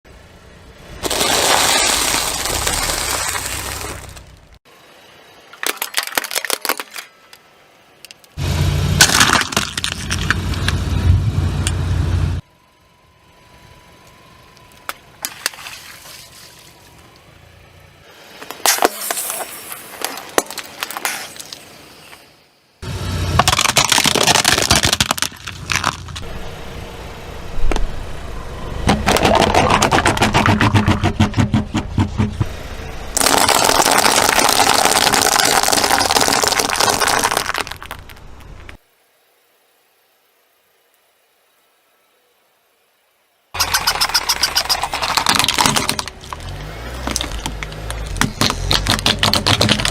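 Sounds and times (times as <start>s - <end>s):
tyres crushing objects: 5.6s - 7.2s, 9.0s - 10.8s, 18.4s - 21.6s, 23.3s - 26.2s, 28.8s - 38.8s, 43.6s - 49.9s
car engine running: 22.8s - 33.8s, 43.6s - 49.9s
cracking and crackling: 23.4s - 26.2s, 28.9s - 32.5s, 33.2s - 38.8s, 43.6s - 49.9s
tyre crushing objects crackling: 23.4s - 26.2s, 44.7s - 49.9s.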